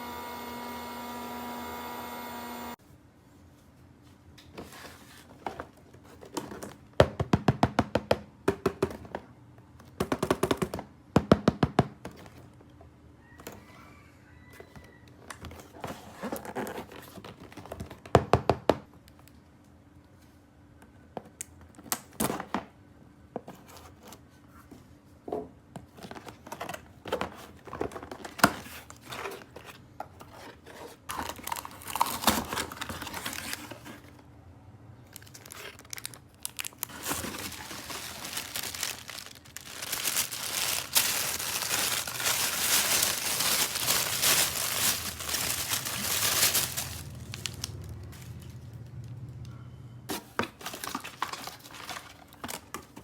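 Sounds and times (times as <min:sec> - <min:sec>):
plastic wrapping crinkling and tearing: 0:30.4 - 0:34.2, 0:35.1 - 0:48.9, 0:50.6 - 0:53.0.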